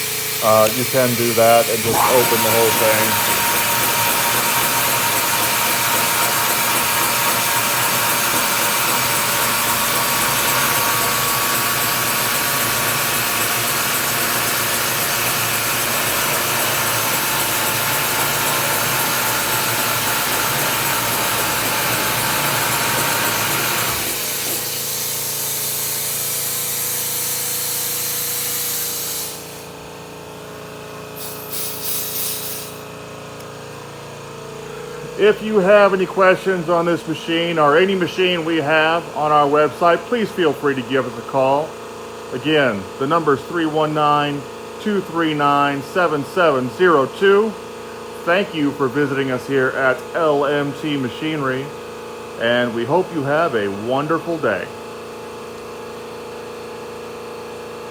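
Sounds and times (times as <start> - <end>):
compressed air hissing: 0.0 - 3.9, 28.0 - 29.7
low machine hum: 0.4 - 12.6.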